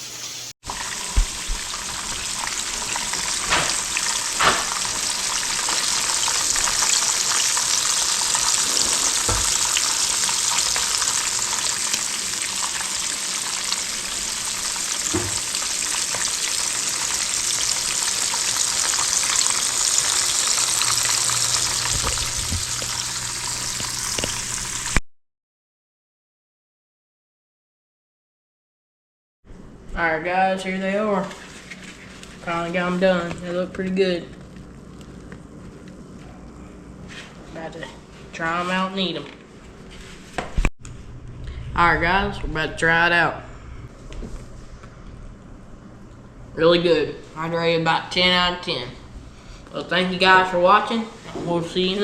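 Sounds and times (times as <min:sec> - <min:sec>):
food sizzling in a pot: 0:00.0 - 0:25.0.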